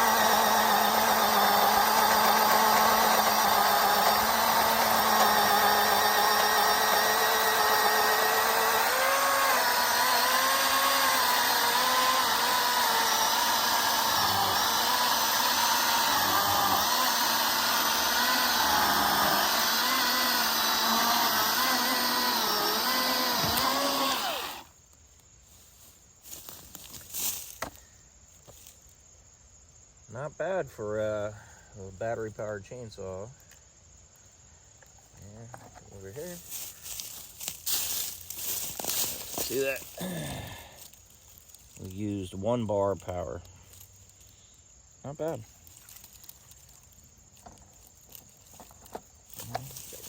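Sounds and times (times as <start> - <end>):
electric chainsaw cutting log: 0.0 - 24.8, 36.0 - 41.8, 48.2 - 50.0.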